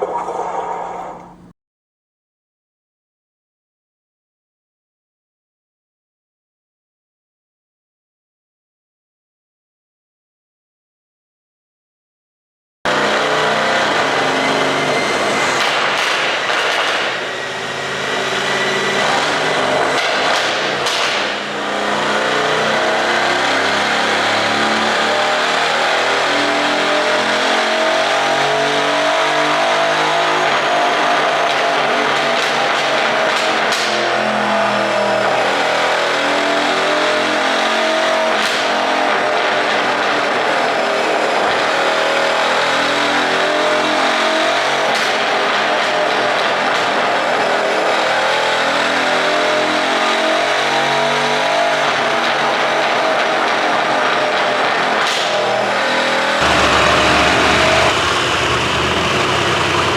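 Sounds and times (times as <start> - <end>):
car engine running hard: 12.9 - 33.4, 55.6 - 59.9
exhaust pops: 56.4 - 59.9.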